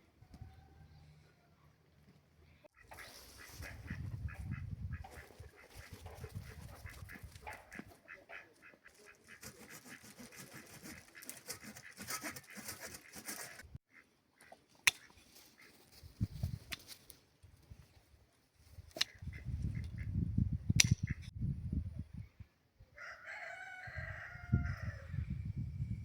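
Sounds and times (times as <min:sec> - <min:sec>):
farmyard animals calling: 0:02.8 - 0:14.6
sharp click: 0:20.8 - 0:21.2.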